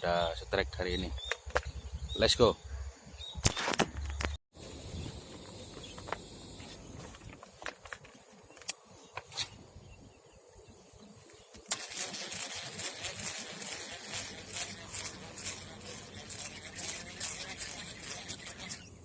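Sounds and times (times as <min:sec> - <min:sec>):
sharp snap: 0:03.4 - 0:04.4.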